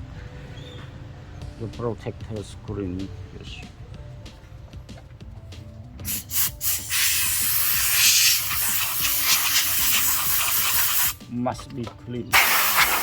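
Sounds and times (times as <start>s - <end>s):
compressed air blower hissing: 6.0s - 11.2s, 12.3s - 13.0s.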